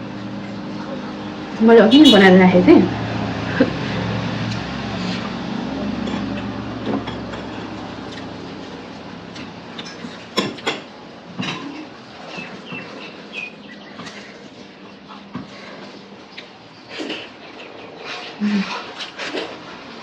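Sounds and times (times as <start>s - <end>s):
low engine hum: 0.0s - 20.0s
bird chirps: 12.3s - 14.3s.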